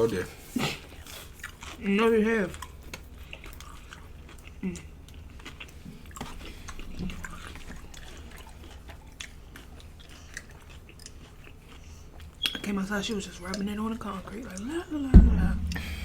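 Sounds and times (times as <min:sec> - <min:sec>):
chewing and crunching fried food: 0:00.0 - 0:15.2
low steady hum: 0:11.7 - 0:16.0.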